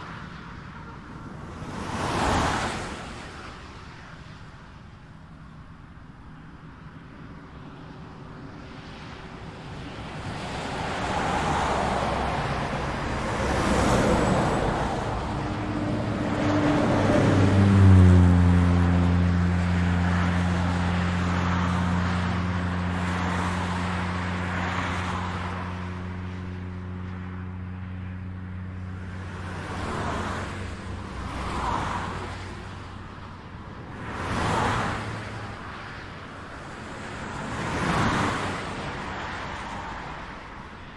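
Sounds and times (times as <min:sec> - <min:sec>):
cars passing by: 0:00.0 - 0:40.9
highway traffic passing: 0:00.0 - 0:40.9
heavy engine low hum: 0:09.2 - 0:34.2.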